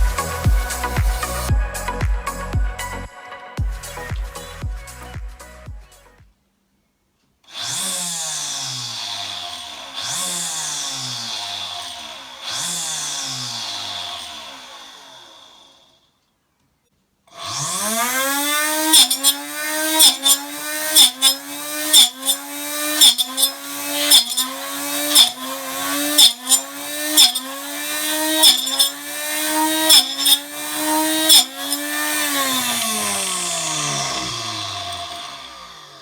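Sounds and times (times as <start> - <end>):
table saw motor spinning: 7.5 - 16.0, 17.3 - 36.0.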